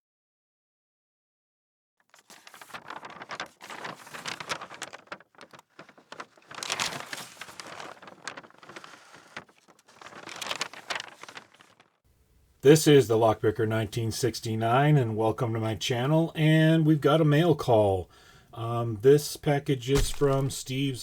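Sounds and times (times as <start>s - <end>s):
rustling and crackling: 2.1s - 12.0s, 19.9s - 21.0s.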